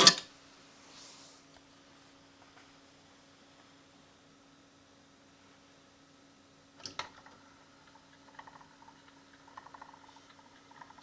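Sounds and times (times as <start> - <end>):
faint steady hum: 0.0 - 11.0
light ticking and rattling: 6.8 - 11.0.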